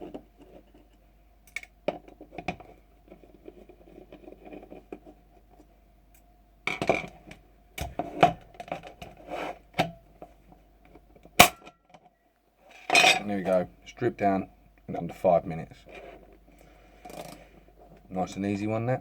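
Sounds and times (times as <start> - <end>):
faint scraping of gun parts: 2.1 - 5.7, 7.9 - 10.4, 12.1 - 13.7, 15.1 - 18.6.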